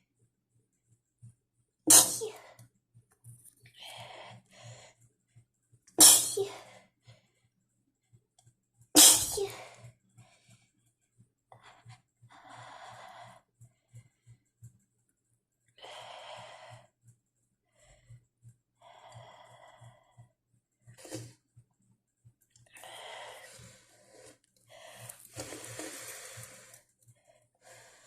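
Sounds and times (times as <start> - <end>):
woman sneezing: 1.9 - 2.4, 6.0 - 6.6, 9.0 - 9.6
noisy breaths: 3.6 - 5.6, 6.5 - 8.2, 9.4 - 14.8, 15.8 - 21.5, 22.6 - 28.0.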